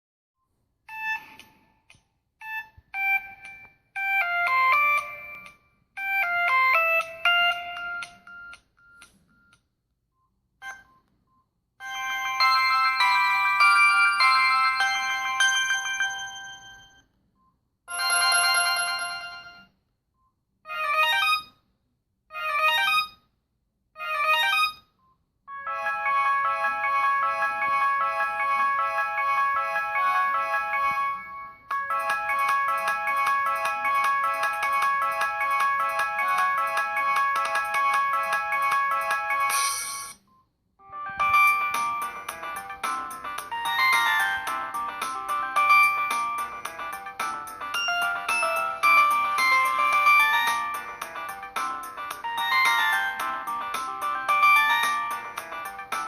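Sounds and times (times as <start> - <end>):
synthesized ringtone melody: 0.9 - 9.6, 10.6 - 11.1, 11.8 - 17.1, 17.9 - 19.7, 20.7 - 21.6, 22.3 - 23.2, 24.0 - 40.2, 40.8 - 56.0.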